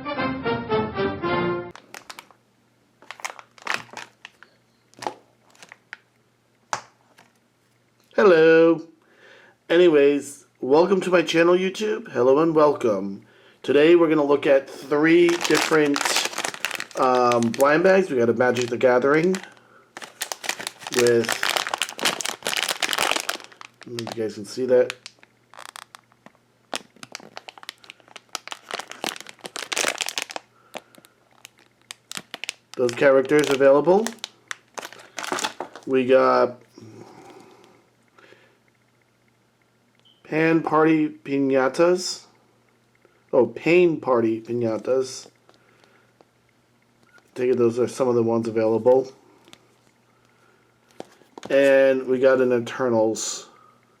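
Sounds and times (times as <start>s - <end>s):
packaging crinkling: 1.7s - 2.4s, 3.0s - 6.1s, 15.1s - 36.1s.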